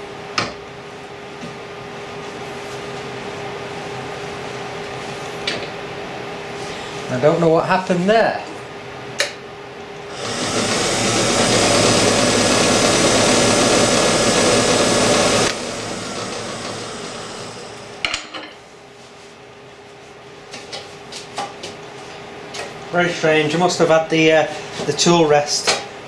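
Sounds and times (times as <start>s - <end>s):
rough scraping on lathe: 10.1s - 18.0s
wood lathe running: 10.1s - 18.1s.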